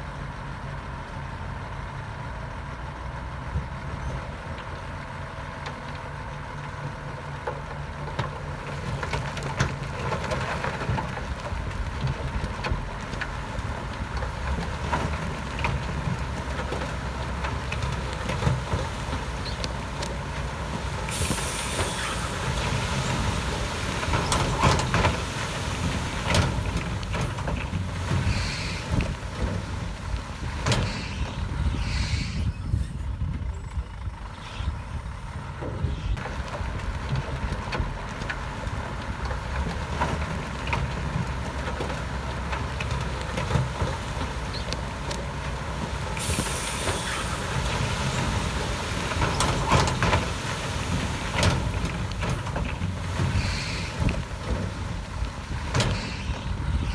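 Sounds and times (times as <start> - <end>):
bulldozer diesel engine running: 0.0 - 56.9
metal clanks and squeaks: 14.2 - 36.5, 46.2 - 56.9
hiss: 20.7 - 26.7, 28.1 - 29.4, 30.5 - 33.0, 45.9 - 52.4, 53.0 - 54.6.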